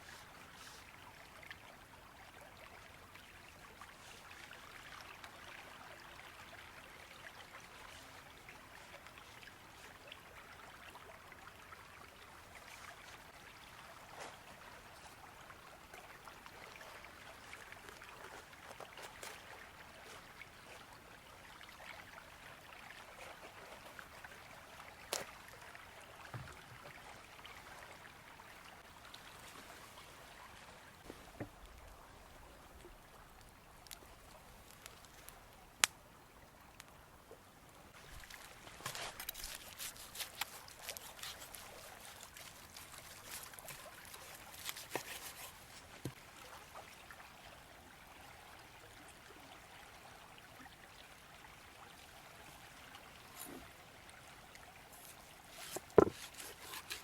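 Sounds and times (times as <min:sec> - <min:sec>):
flowing river: 0:00.0 - 0:57.0.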